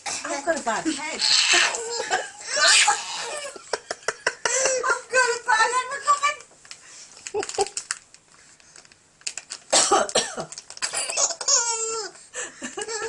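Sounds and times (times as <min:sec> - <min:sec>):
adult coughing: 0:09.7 - 0:11.3
baby giggling: 0:10.8 - 0:12.2.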